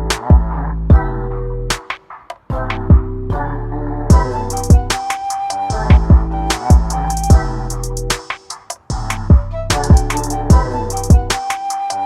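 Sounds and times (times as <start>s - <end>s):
deep kick drums: 0.0s - 1.3s, 2.5s - 3.4s, 4.1s - 5.0s, 5.7s - 7.7s, 8.9s - 11.4s
held bass line: 0.0s - 1.8s, 2.5s - 5.0s, 5.7s - 8.2s, 8.9s - 11.4s.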